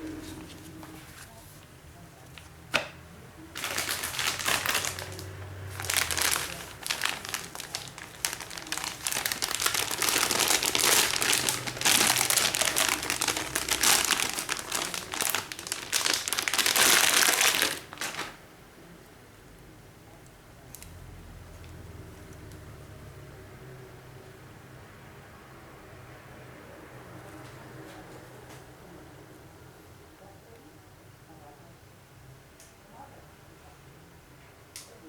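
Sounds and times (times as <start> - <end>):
packaging crinkling: 3.6 - 18.4.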